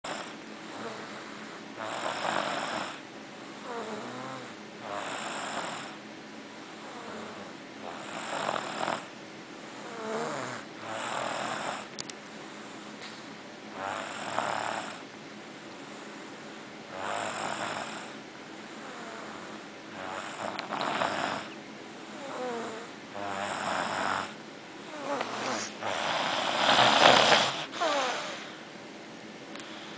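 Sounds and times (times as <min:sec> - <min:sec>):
child snoring: 0:00.0 - 0:03.0, 0:03.6 - 0:06.0, 0:06.8 - 0:09.1, 0:09.8 - 0:11.9, 0:13.7 - 0:15.0, 0:16.9 - 0:28.6.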